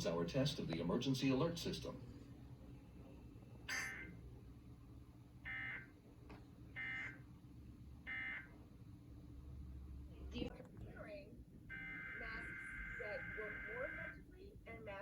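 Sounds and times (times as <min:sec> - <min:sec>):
buzzing two-tone digital code: 0:03.7 - 0:04.2, 0:05.5 - 0:05.9, 0:06.8 - 0:07.2, 0:11.7 - 0:14.2.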